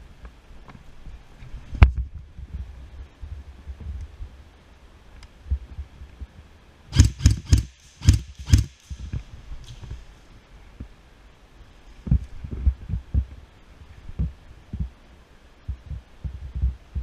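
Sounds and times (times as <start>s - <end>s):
sharp knocks: 7.0s - 9.2s.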